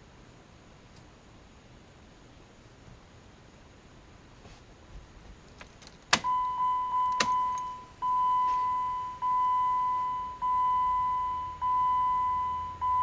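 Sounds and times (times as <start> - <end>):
car warning chime dinging: 6.2 - 13.0.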